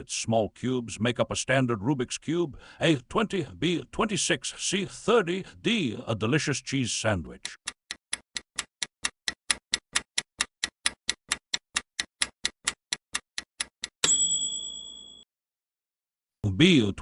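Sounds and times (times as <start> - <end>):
clock ticking rapidly: 7.4 - 14.0
bell-like ding: 14.0 - 15.3.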